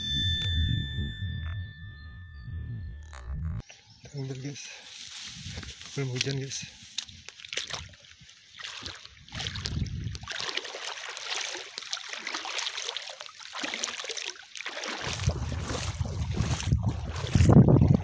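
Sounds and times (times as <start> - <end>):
low rumble: 0.0 - 3.6
water sloshing and splashing: 5.4 - 18.0.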